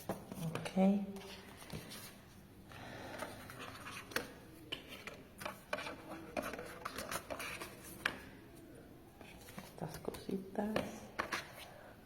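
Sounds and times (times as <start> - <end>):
paper rustling: 3.2 - 8.3.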